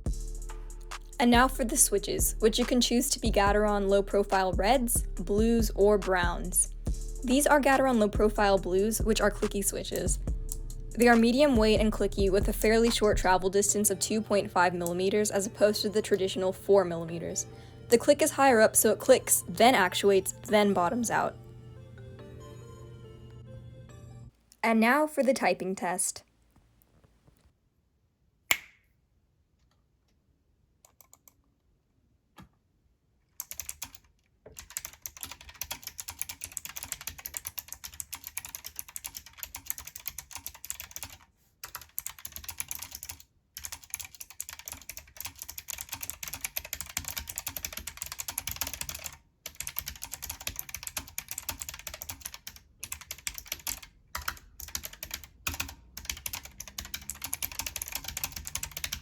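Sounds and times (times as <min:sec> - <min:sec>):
fast typing on clicky keyboard: 0:33.4 - 0:59.0
sharp keyboard click: 0:33.4 - 0:59.0.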